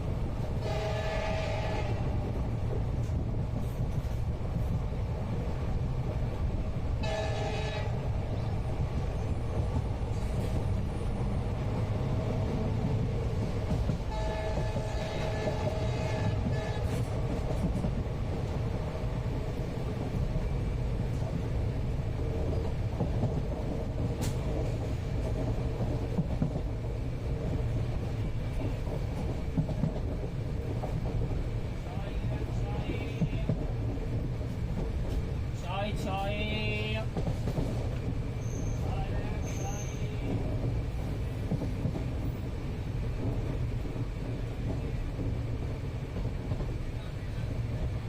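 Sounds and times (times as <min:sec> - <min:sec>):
train rumble inside carriage: 0:00.0 - 0:48.0
train horn: 0:00.6 - 0:02.2, 0:07.0 - 0:08.1, 0:14.0 - 0:17.2.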